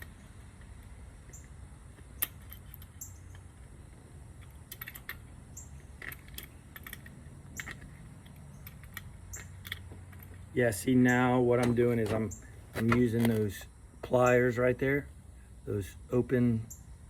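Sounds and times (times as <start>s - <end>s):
metal tools clicking on bolt: 0.0s - 3.7s, 4.3s - 13.5s.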